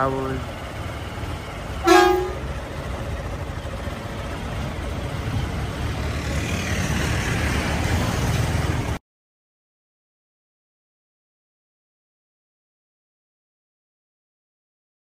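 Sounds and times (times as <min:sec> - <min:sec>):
vehicle engine rumble and road noise: 0:00.0 - 0:09.0.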